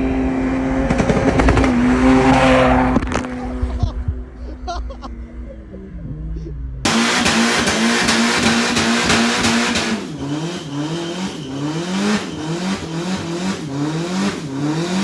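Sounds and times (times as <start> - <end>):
car engine revving: 0.0 - 3.6, 6.8 - 15.0.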